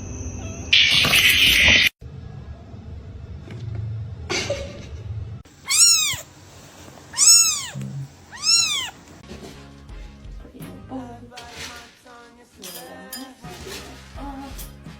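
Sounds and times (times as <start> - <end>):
cat meowing: 5.6 - 6.3, 7.1 - 9.0.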